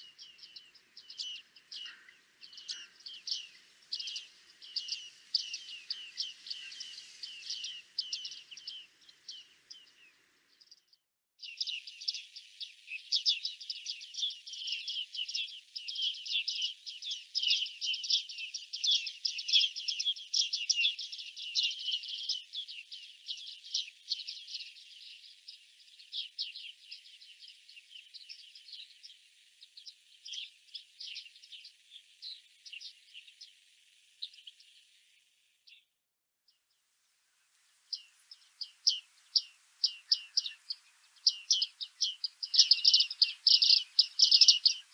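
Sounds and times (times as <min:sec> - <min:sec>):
birds calling: 0:00.0 - 0:10.0, 0:37.9 - 0:44.9.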